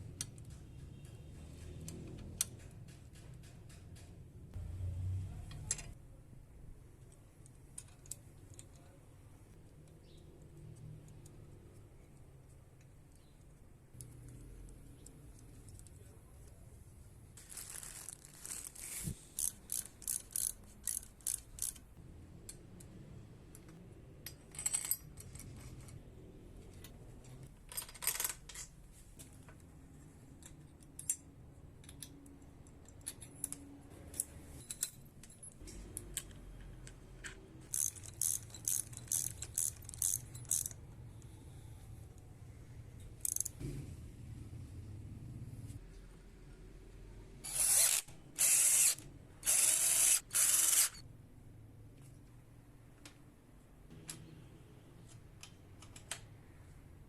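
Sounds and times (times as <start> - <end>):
small metal parts clinking: 24.2 - 26.0, 32.8 - 36.4, 37.6 - 40.9, 43.2 - 43.6.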